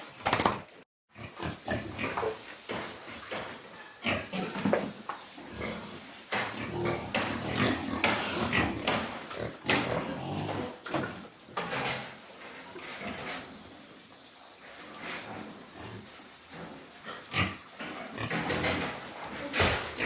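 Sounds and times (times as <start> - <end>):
pigs calling: 3.2 - 10.8, 15.3 - 20.0.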